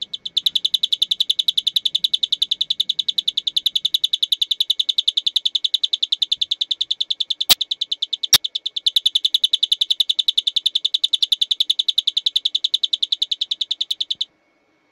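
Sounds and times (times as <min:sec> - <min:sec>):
electronic doorbell chirping: 0:00.0 - 0:14.3
sharp clicks: 0:03.4 - 0:14.3.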